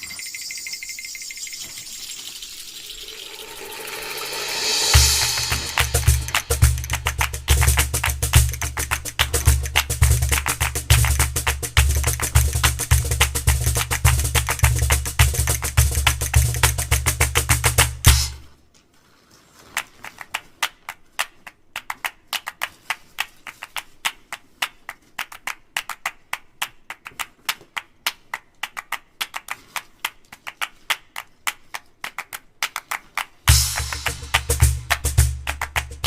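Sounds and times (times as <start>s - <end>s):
fast light tapping percussion: 0.0s - 18.5s, 30.6s - 36.0s
beat with heavy bass: 3.1s - 18.4s, 33.5s - 36.0s.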